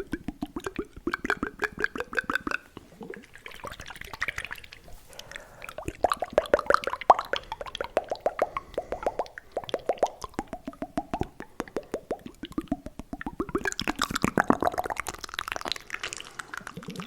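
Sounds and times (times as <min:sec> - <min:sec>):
hollow mouth pops: 0:00.0 - 0:17.0
tongue clicks: 0:00.0 - 0:17.0
wet mouth slurping: 0:00.0 - 0:17.0.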